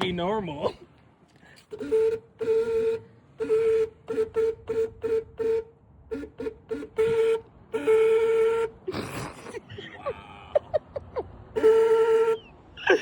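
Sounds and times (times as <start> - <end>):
thin car horn honking: 1.6 - 8.9, 11.5 - 12.5.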